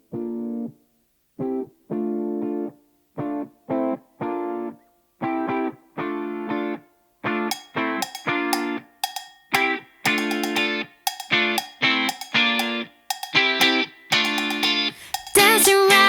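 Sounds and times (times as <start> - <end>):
plucked chords background music: 6.2 - 16.0.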